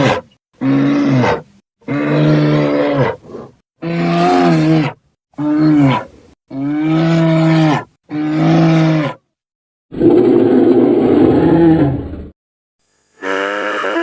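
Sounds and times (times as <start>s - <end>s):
deep dragon roars: 10.0s - 12.3s.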